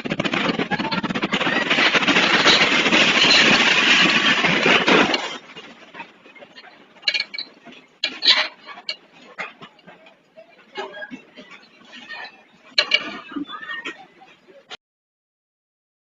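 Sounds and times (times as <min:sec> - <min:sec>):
dense rattling and clattering: 0:00.0 - 0:10.1.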